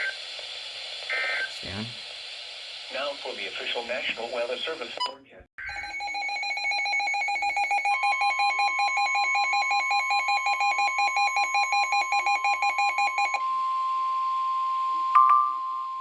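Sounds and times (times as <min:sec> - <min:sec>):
two-tone warbling alarm beeps: 0:05.6 - 0:16.0
steady warning alarm tone: 0:05.7 - 0:15.0.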